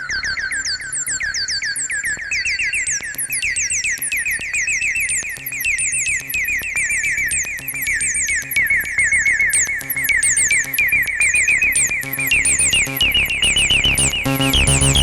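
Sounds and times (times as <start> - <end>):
synth bass arpeggio chirps: 9.6 - 15.0
low synth pulses: 12.1 - 15.0.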